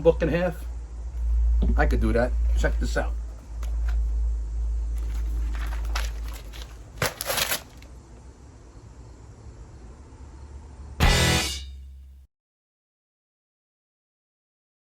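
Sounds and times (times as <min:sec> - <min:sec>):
paper crinkling and rustling: 0:04.9 - 0:08.0.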